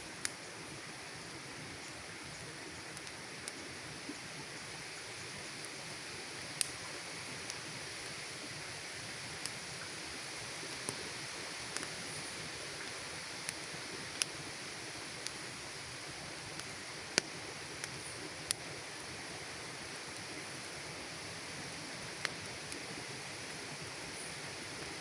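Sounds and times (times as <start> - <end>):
campfire crackling and popping: 0.0 - 25.0.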